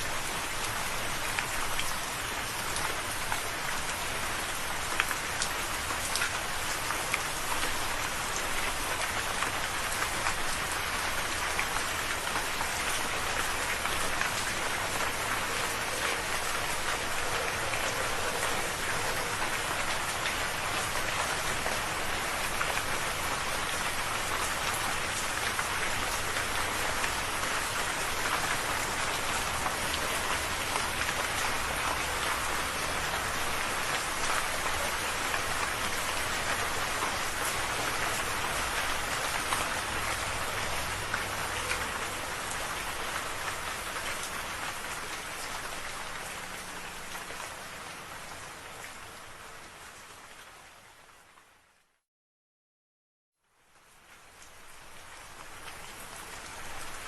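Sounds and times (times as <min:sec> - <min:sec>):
steady rain falling: 0:00.0 - 0:52.0, 0:53.4 - 0:57.0.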